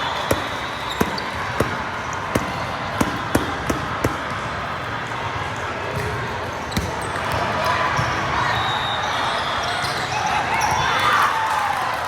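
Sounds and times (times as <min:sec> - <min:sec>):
busy gymnasium din: 0:00.0 - 0:12.0
volleyballs smacking hands and floor: 0:00.2 - 0:04.4.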